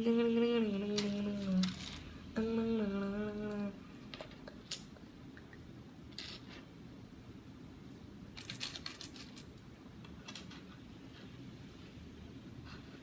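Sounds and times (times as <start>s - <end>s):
plastic pieces clicking and rattling: 4.1s - 4.9s, 8.4s - 10.7s.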